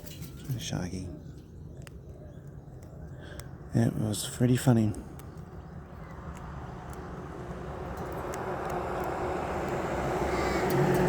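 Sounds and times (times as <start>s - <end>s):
vehicle rushing rumble: 6.2s - 11.0s.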